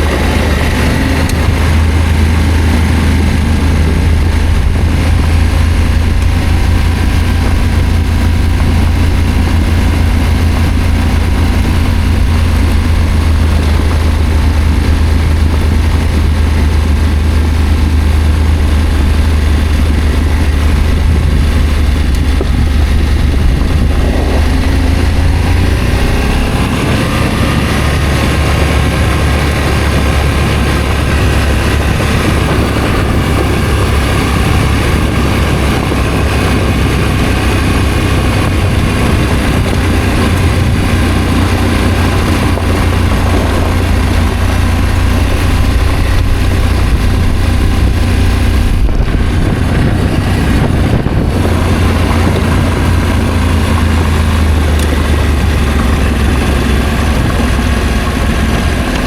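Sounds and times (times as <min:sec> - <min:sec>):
motorcycle engine running: 0:00.0 - 0:59.0
road noise: 0:00.0 - 0:59.0.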